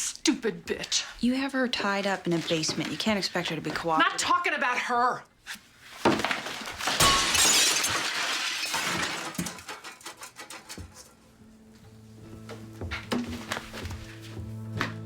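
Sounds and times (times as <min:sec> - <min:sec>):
glass shattering: 0:06.6 - 0:10.2.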